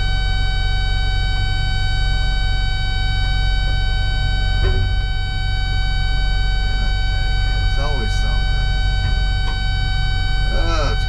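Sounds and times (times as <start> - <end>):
continuous high-pitched tone: 0.0 - 11.0
excavator diesel engine running: 0.0 - 11.0.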